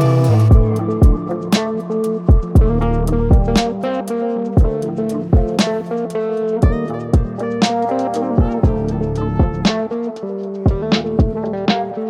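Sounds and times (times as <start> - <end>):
bass: 0.0 - 1.2, 2.6 - 3.7, 8.7 - 9.7
steady drum beat: 0.0 - 3.8, 4.6 - 6.0, 6.6 - 10.0, 10.6 - 11.9
guitar: 0.0 - 12.0.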